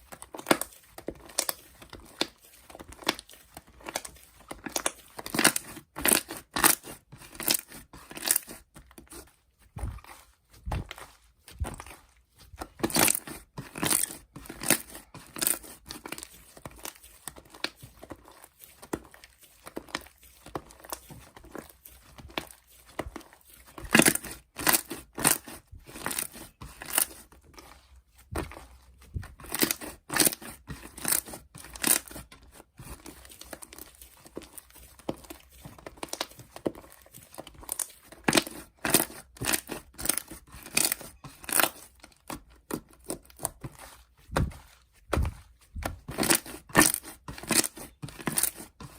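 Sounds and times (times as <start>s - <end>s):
crinkling and tearing: 0.0s - 48.9s.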